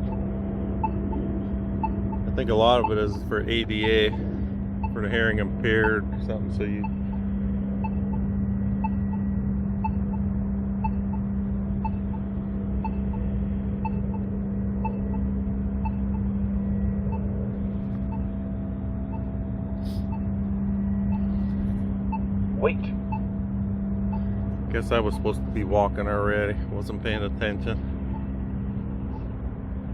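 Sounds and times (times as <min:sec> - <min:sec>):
crosswalk signal ticking: 0:00.0 - 0:08.2, 0:08.8 - 0:09.2, 0:09.8 - 0:16.3, 0:17.1 - 0:20.4, 0:21.1 - 0:22.3, 0:22.9 - 0:23.3, 0:24.0 - 0:25.9
steady low hum: 0:00.0 - 0:29.9.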